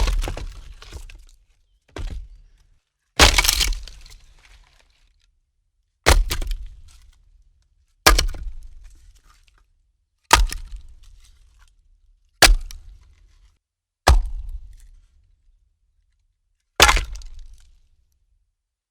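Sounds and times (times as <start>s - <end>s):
logs set down on woodpile: 0.0s - 5.1s.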